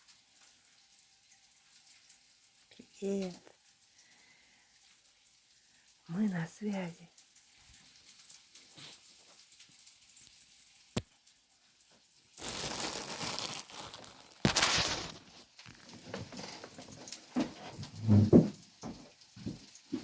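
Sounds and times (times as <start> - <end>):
rustling and crinkling handling: 12.4 - 18.5.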